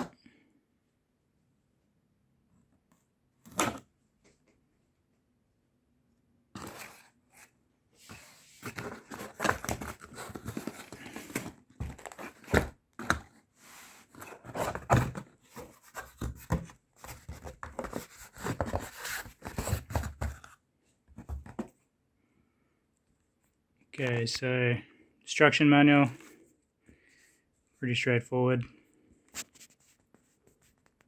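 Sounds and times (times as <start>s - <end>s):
contents thunking: 8.1s - 13.3s.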